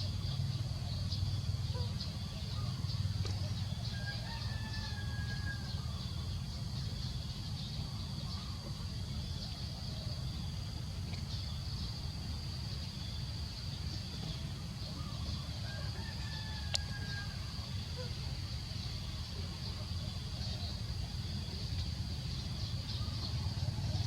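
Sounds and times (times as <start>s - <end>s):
small ticks: 16.7s - 16.9s.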